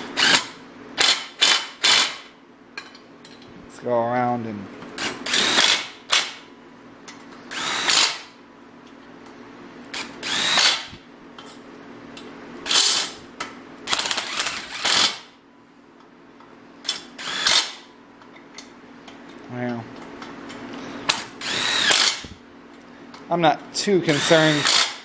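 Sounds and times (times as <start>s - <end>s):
impact driver hammering: 0.0s - 2.3s, 5.2s - 6.4s, 10.2s - 11.0s, 21.1s - 22.3s, 24.2s - 25.0s.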